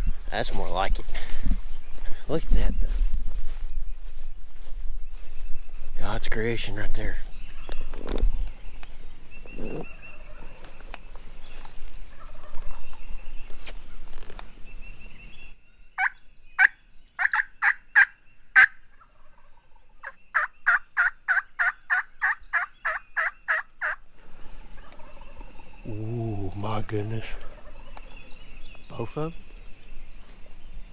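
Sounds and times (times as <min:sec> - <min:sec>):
wild turkey yelping: 0:11.6 - 0:13.0, 0:16.0 - 0:25.8, 0:27.2 - 0:28.4.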